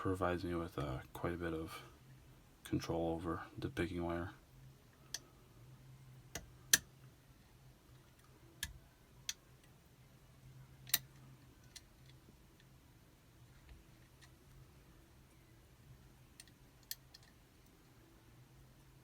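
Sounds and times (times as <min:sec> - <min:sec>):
lock picking metallic clicks: 0:10.8 - 0:12.7, 0:16.3 - 0:17.7.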